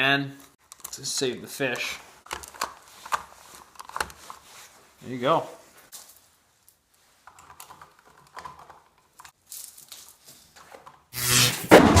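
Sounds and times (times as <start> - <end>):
hands handling wires and tape: 0.4 - 1.1, 1.7 - 4.8, 5.7 - 11.1.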